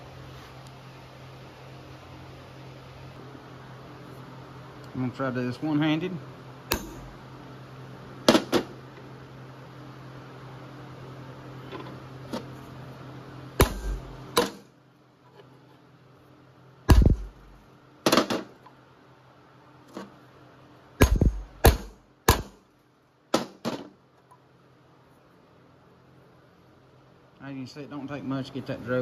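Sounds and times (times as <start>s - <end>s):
hammer striking metal: 6.7s - 7.1s, 13.6s - 14.6s, 21.0s - 22.6s.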